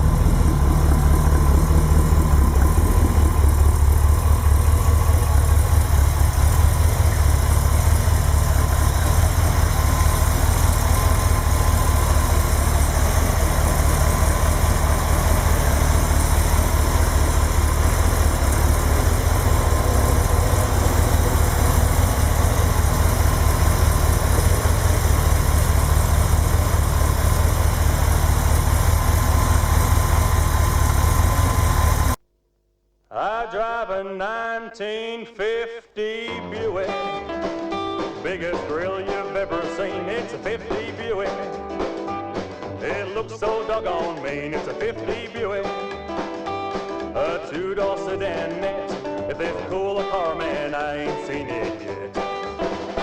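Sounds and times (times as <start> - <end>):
car engine idling: 0.0 - 32.2.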